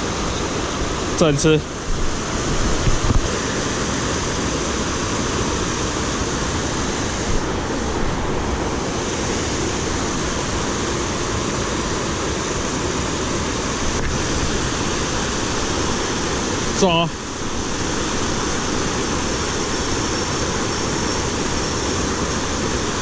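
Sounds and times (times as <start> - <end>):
creek water flowing: 0.0 - 23.0.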